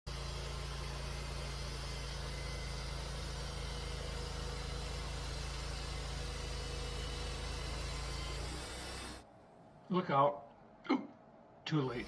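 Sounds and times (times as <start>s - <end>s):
sawmill engine humming: 0.1s - 9.2s.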